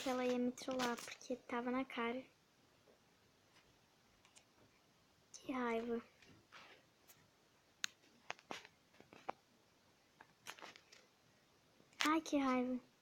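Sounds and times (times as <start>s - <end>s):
soft rustles: 0.0s - 1.4s, 5.7s - 7.3s, 8.0s - 9.4s, 10.2s - 11.2s.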